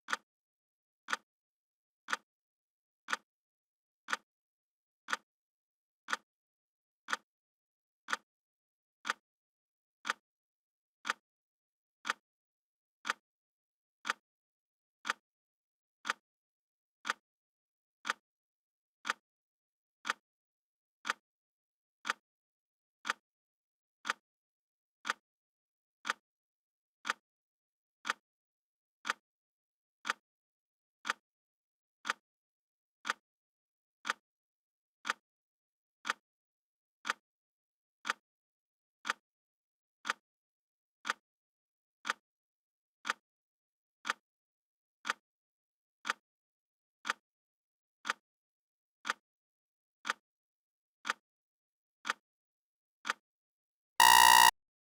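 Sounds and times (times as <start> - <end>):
clock ticking: 54.0 - 54.5.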